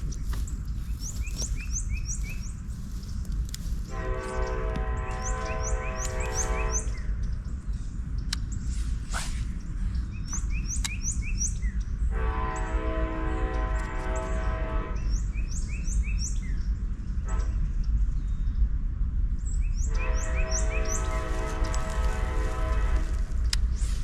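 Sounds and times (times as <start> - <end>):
birds chirping: 0.0 - 18.6, 19.4 - 23.8
multi-tone horn blast: 3.9 - 7.0, 12.1 - 15.1, 20.0 - 23.4.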